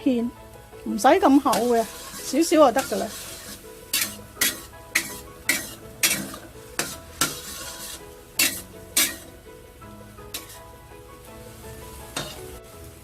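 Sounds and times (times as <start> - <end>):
light sizzle: 0.0 - 13.0
utensil scraping sauce in a pan: 1.2 - 9.5, 10.2 - 10.8, 11.5 - 12.6.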